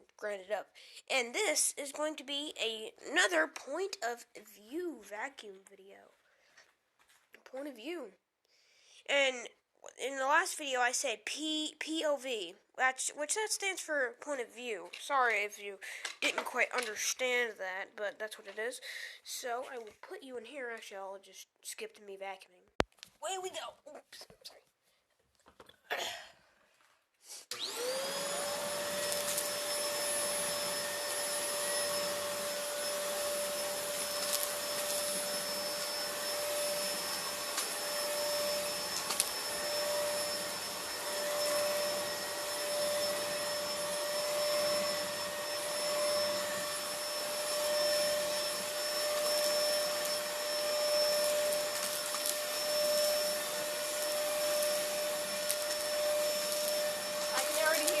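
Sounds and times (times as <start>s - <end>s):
vacuum cleaner motor whine: 27.5s - 58.0s.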